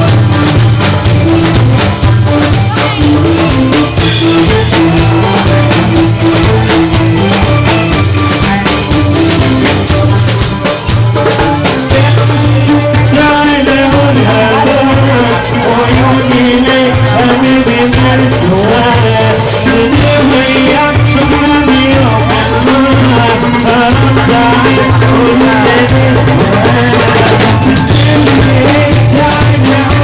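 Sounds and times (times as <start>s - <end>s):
wavering melody: 0.0s - 17.5s
bass line: 0.0s - 30.0s
shaker rhythm: 0.0s - 30.0s.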